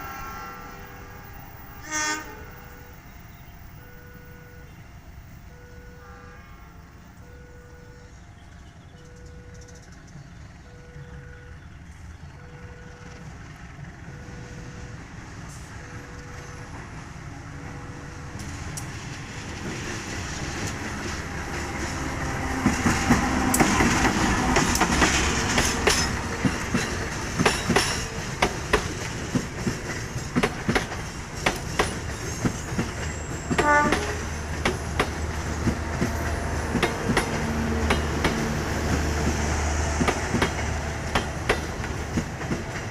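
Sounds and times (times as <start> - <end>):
train horn blast: 0.0 - 3.0, 5.5 - 7.2, 33.4 - 34.5
train wheels clattering: 18.3 - 42.9.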